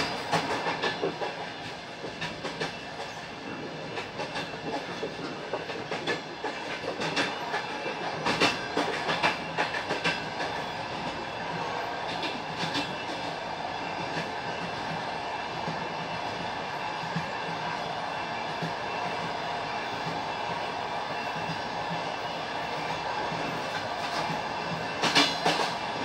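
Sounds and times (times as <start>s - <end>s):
train wheels clattering over rail joints: 0.0s - 11.2s, 23.3s - 26.0s
train rolling rumble: 0.0s - 26.0s.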